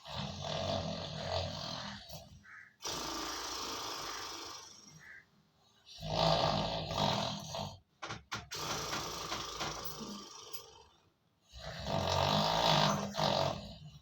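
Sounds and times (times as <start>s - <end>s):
man snoring loudly: 0.0s - 2.2s, 2.8s - 5.0s, 5.9s - 7.8s, 8.5s - 10.9s, 11.5s - 14.0s
short broken snorts: 2.8s - 5.2s, 11.6s - 13.8s.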